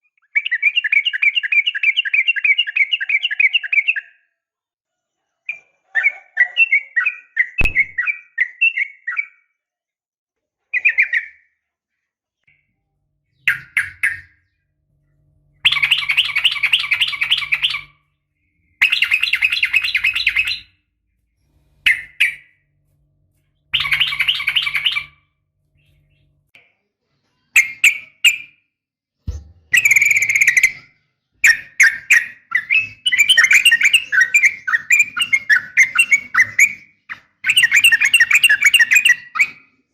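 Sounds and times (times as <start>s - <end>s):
bird rapid chattering calls: 13.4s - 14.5s, 15.6s - 18.1s, 18.8s - 20.8s, 21.4s - 22.6s, 23.4s - 26.4s.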